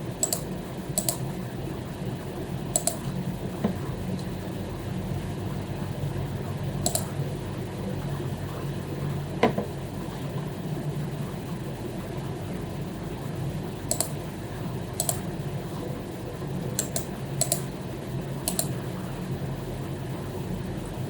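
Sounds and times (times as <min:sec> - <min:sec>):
steady low hum: 0:00.0 - 0:21.0
computer mouse clicks: 0:00.2 - 0:01.2, 0:02.7 - 0:03.0, 0:06.8 - 0:07.1, 0:13.9 - 0:14.2, 0:15.0 - 0:15.3, 0:16.8 - 0:17.7, 0:18.4 - 0:18.8.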